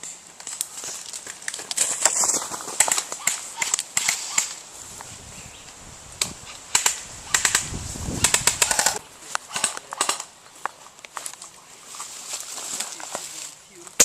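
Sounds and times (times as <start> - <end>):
airsoft guns firing: 2.7 - 4.6, 6.7 - 10.3.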